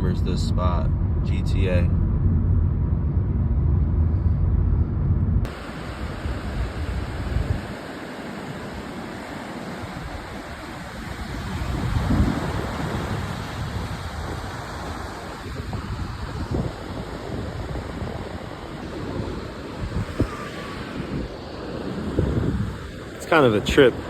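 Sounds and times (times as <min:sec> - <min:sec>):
low car road rumble: 0:00.0 - 0:07.8, 0:09.8 - 0:24.0
wind buffeting microphone: 0:00.0 - 0:24.0
surf washing on a beach: 0:05.5 - 0:24.0.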